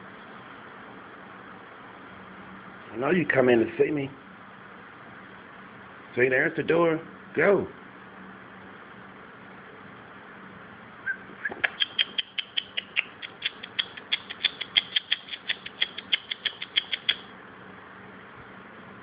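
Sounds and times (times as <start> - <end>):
small bird chip notes: 11.1 - 17.3.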